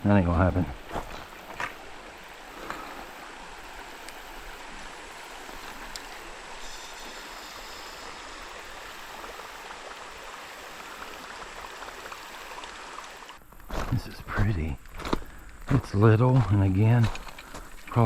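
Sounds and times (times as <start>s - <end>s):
creek water running over rocks: 0.0s - 18.0s
faint clicks: 4.0s - 4.3s, 5.8s - 6.2s.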